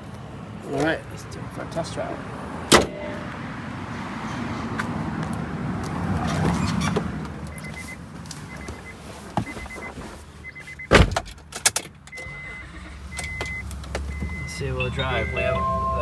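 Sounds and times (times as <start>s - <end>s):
car warning chime beeps: 2.7s - 3.6s, 7.4s - 11.0s, 12.1s - 16.0s.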